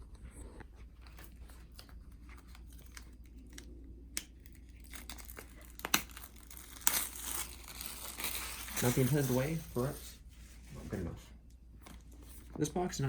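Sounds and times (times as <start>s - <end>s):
plastic wrapping tearing: 1.0s - 10.1s.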